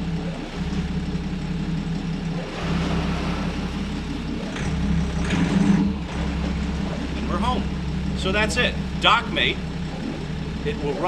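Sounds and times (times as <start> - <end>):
boat engine humming: 0.0 - 11.0.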